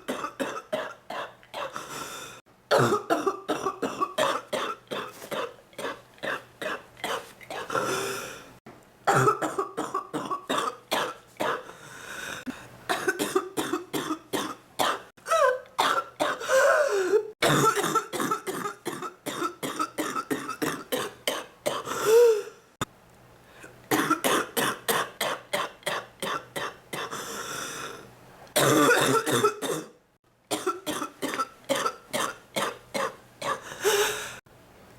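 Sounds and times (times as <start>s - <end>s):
woman coughing: 0.0s - 1.9s, 2.7s - 8.0s, 9.1s - 11.6s, 12.9s - 22.4s, 23.9s - 27.1s, 28.6s - 34.0s.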